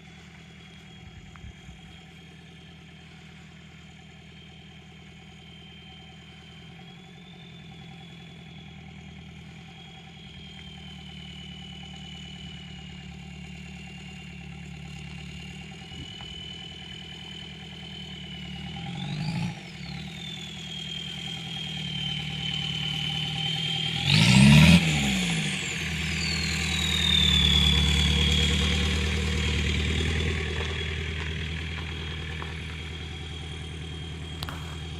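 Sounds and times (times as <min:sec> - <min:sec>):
diesel engine idling and revving: 0:00.0 - 0:34.9
turbo whistle: 0:04.2 - 0:14.2.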